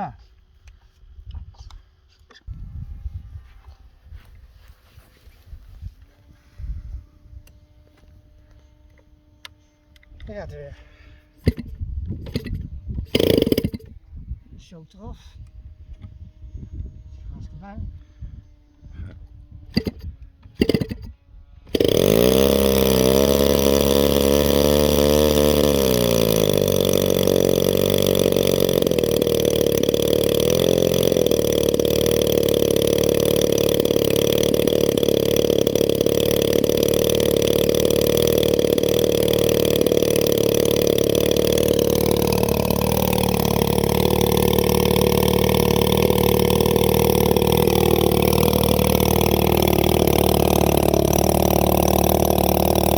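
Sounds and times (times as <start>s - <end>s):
model plane engine running: 11.4s - 13.9s, 18.4s - 21.1s, 21.7s - 52.9s.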